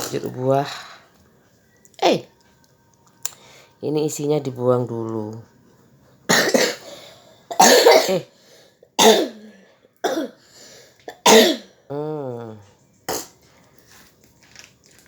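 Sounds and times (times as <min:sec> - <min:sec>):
person coughing: 0:06.3 - 0:08.3, 0:09.0 - 0:10.4, 0:11.1 - 0:12.1.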